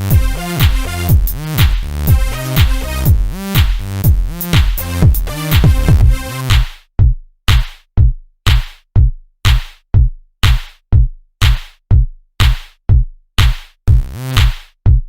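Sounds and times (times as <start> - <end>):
drum machine beat: 0.0 - 15.0.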